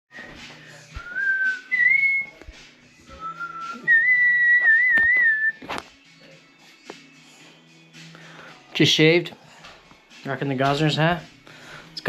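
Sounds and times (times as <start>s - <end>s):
person whistling: 0.1s - 2.4s, 3.1s - 5.6s.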